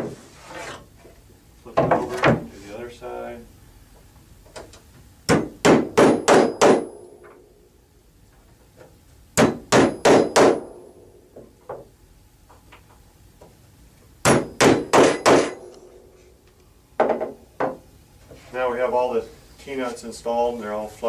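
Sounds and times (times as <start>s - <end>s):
hammer pounding metal nuts into wood: 5.3s - 7.2s, 9.4s - 10.9s, 14.2s - 15.8s.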